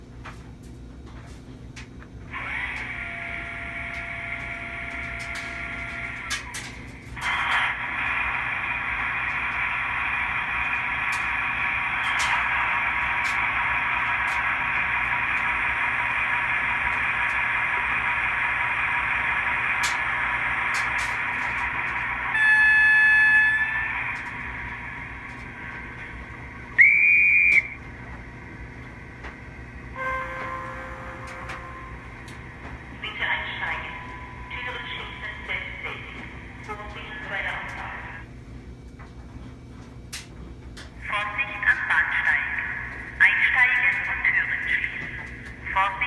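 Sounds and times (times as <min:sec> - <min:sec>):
steady hissing running sound: 0:02.3 - 0:38.4
multi-tone locomotive horn: 0:02.4 - 0:06.2, 0:22.3 - 0:24.2, 0:29.9 - 0:35.7
short high whistle: 0:30.0 - 0:32.2.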